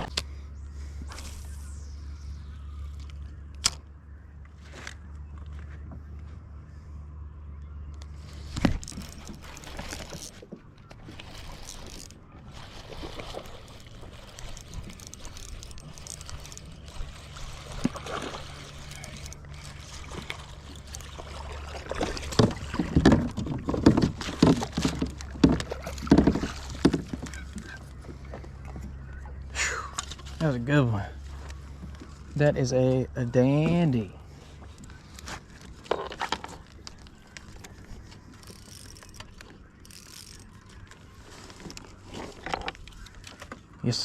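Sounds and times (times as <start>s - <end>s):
water sloshing around kayak: 8.1s - 44.0s
sharp knocks and splashes: 12.6s - 28.8s.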